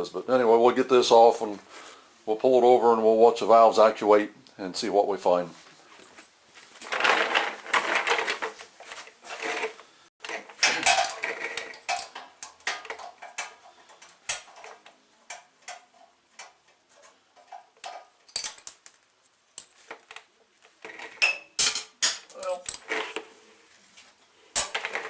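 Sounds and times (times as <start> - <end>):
metal tools clicking and clinking: 10.3 - 16.6, 17.4 - 18.8, 21.2 - 22.9.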